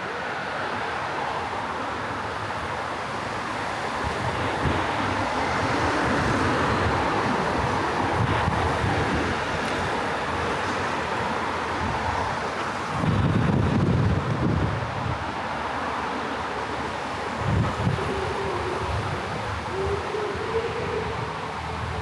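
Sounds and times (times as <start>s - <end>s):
city street traffic: 0.0s - 22.0s
wind buffeting microphone: 3.9s - 15.7s, 16.8s - 22.0s.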